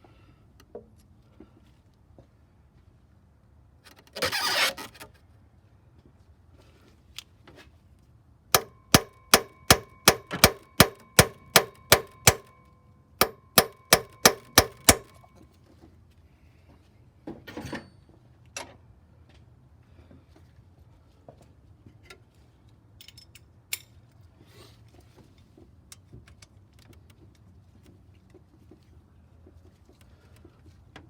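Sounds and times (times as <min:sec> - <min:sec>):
hammer striking steel chisel: 0:08.6 - 0:12.5, 0:13.2 - 0:15.2.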